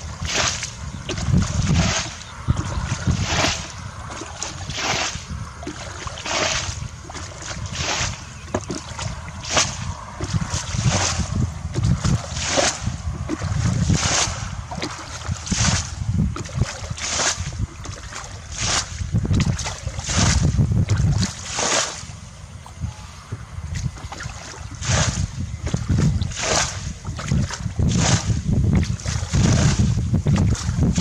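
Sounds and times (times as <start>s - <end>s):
water splashing in strokes: 0.0s - 22.8s, 23.7s - 31.0s
low rumble: 0.0s - 31.0s.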